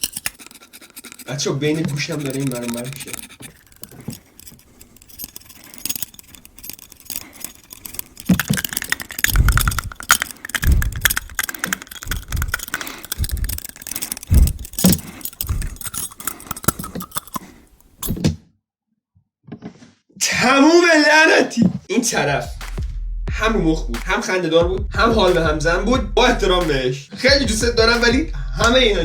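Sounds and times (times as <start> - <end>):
jangling and clattering clicks: 0.0 - 18.2.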